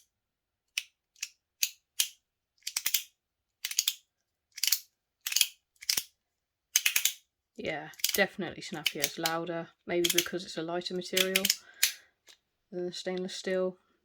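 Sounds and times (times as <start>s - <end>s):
metal fidget toy clicking: 0.7s - 6.1s, 6.7s - 7.3s, 7.9s - 9.4s, 10.0s - 12.0s.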